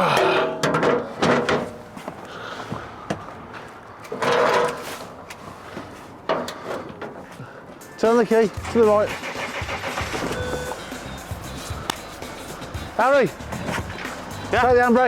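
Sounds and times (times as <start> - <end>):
clunks and scrapes of panels: 0.2 - 7.4, 13.4 - 14.2.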